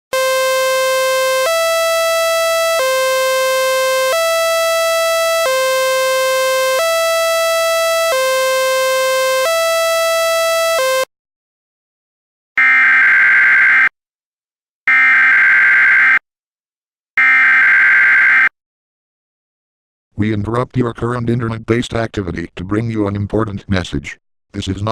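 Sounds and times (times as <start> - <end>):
harsh two-tone electronic alert: 0.1 - 11.1.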